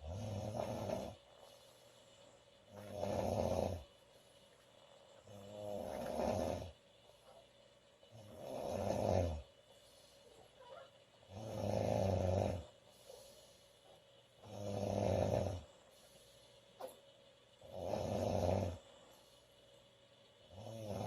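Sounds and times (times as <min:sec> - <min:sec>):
woman snoring loudly: 0:00.0 - 0:01.2, 0:02.7 - 0:03.8, 0:05.3 - 0:06.8, 0:08.2 - 0:09.5, 0:11.3 - 0:12.7, 0:14.4 - 0:15.7, 0:17.6 - 0:18.8, 0:20.5 - 0:21.0.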